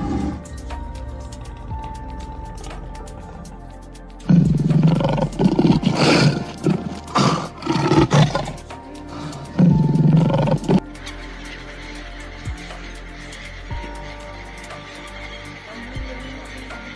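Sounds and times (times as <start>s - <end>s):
large animal roaring: 0.0s - 10.8s
background music: 0.0s - 16.9s.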